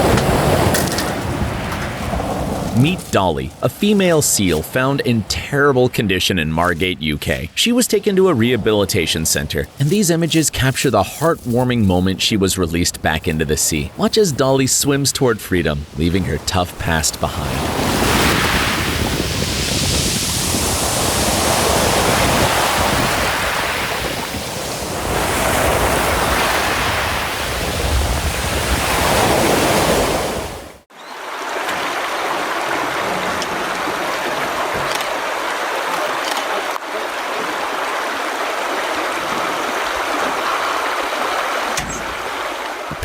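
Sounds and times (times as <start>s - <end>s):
surf breaking on beach: 0.0s - 7.4s, 8.0s - 30.9s
wind buffeting microphone: 17.7s - 30.5s.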